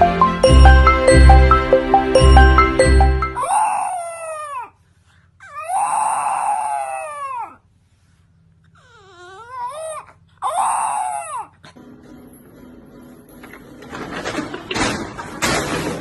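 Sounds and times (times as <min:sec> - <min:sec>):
animal wailing cries: 0:03.4 - 0:04.7, 0:05.4 - 0:07.6, 0:08.8 - 0:11.6.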